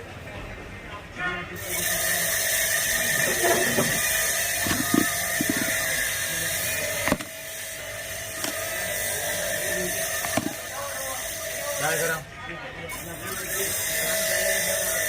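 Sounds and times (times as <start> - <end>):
clicks and knocks of small parts: 4.6 - 5.8, 7.0 - 7.3.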